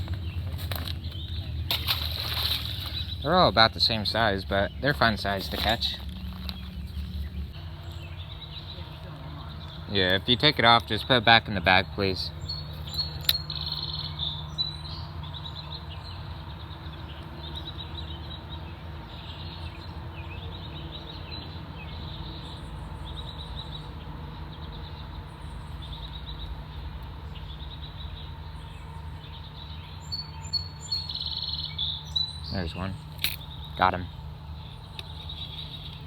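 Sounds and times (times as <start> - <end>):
steady low rumble: 0.0 - 17.2
small birds chirping: 0.0 - 36.0.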